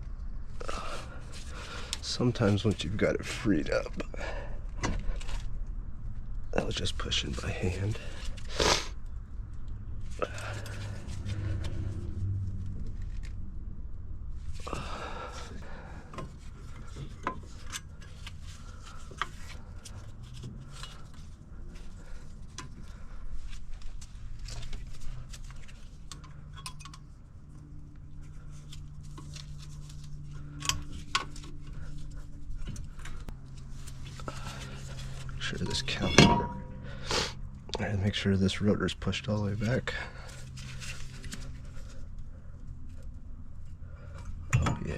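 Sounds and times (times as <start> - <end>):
metal scraping: 30.4 - 38.2.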